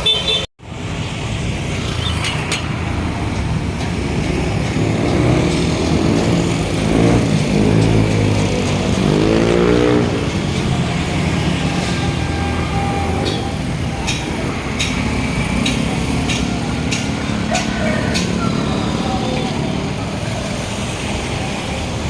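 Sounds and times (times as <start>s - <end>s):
busy road traffic: 0.0s - 22.0s
vehicle speeding up close by: 4.2s - 13.3s.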